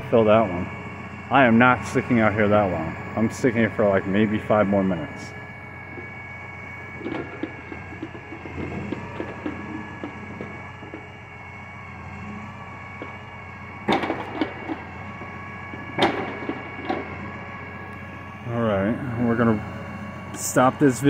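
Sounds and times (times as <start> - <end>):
hydraulic whine: 0.0 - 21.0
logs clunking: 0.7 - 18.5
loud knocks of logs: 15.8 - 17.4.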